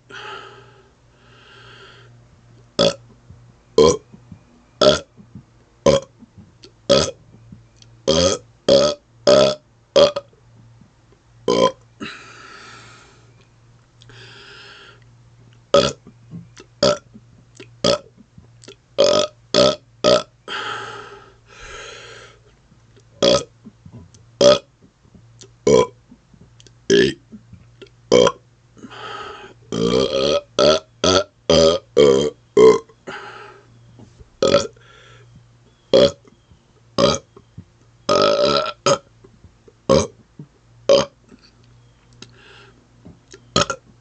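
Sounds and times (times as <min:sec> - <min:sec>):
man breathing: 0:00.0 - 0:02.2, 0:12.0 - 0:13.4, 0:14.0 - 0:15.1, 0:20.5 - 0:22.5, 0:28.8 - 0:29.7, 0:33.0 - 0:33.8, 0:34.8 - 0:35.4, 0:42.2 - 0:42.8
man burping: 0:02.8 - 0:03.0, 0:05.9 - 0:06.2, 0:08.1 - 0:10.3, 0:11.5 - 0:12.4, 0:15.7 - 0:16.0, 0:16.8 - 0:17.0, 0:17.8 - 0:18.0, 0:19.0 - 0:20.7, 0:23.2 - 0:23.5, 0:25.6 - 0:26.0, 0:26.9 - 0:27.3, 0:28.1 - 0:29.1, 0:29.7 - 0:33.6, 0:34.4 - 0:34.8, 0:35.9 - 0:36.2, 0:37.0 - 0:37.2, 0:38.1 - 0:39.1, 0:39.9 - 0:40.2, 0:40.9 - 0:41.5.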